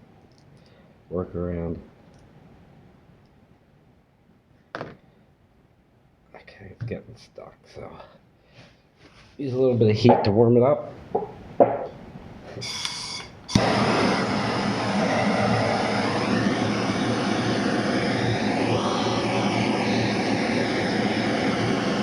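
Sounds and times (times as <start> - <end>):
heat gun fan whirring: 11.1 - 22.0.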